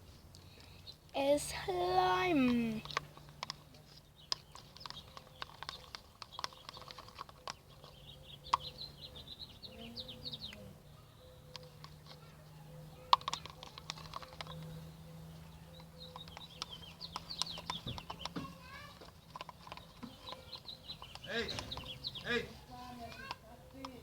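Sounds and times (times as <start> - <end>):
small birds chirping: 0.0 - 24.0
sharp clicks: 1.7 - 9.0, 13.0 - 14.8, 15.8 - 24.0.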